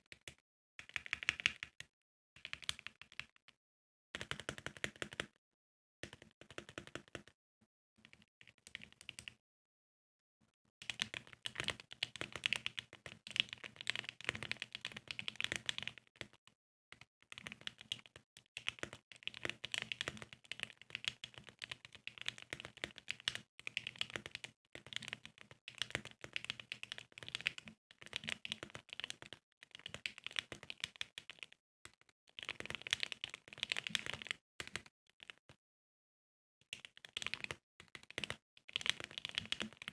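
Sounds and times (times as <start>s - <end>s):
typing on mechanical keyboard: 18.6s - 31.5s, 32.4s - 35.4s, 36.8s - 39.9s.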